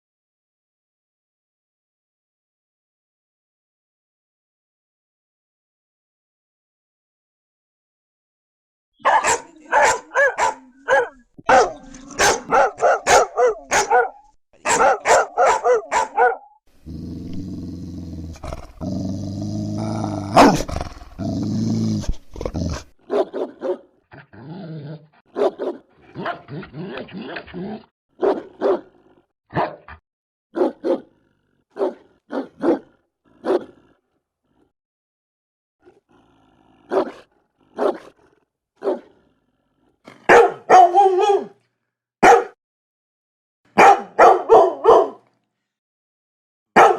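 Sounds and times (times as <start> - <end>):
dogs barking fiercely: 9.0 - 16.6, 20.3 - 21.2, 22.8 - 24.4, 25.3 - 33.8, 36.8 - 38.2, 38.8 - 39.2, 40.1 - 41.6, 42.2 - 42.6, 43.7 - 45.3
dog growling low: 16.8 - 23.0, 24.1 - 25.2, 32.9 - 34.8, 35.8 - 40.3.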